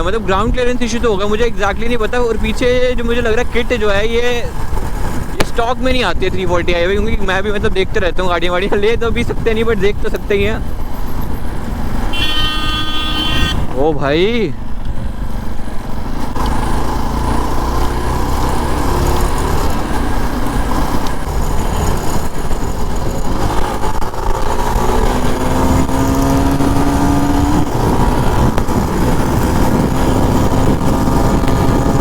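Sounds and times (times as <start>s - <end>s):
vehicle engines rumbling: 0.0s - 32.0s
vehicle accelerating: 14.9s - 32.0s.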